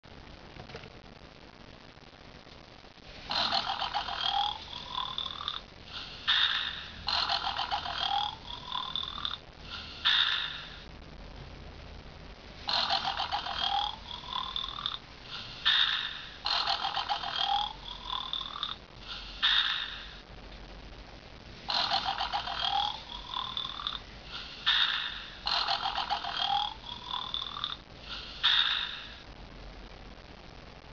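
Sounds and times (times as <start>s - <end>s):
recorded rattling snore: 3.2s - 10.9s, 12.6s - 18.8s, 19.4s - 20.2s, 21.6s - 29.3s.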